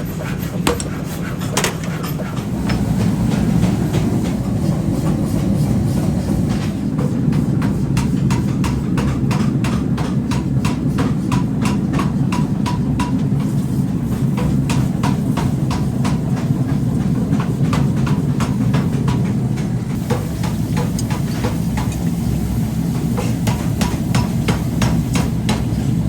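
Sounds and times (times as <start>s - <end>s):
machinery low drone: 2.4s - 7.0s.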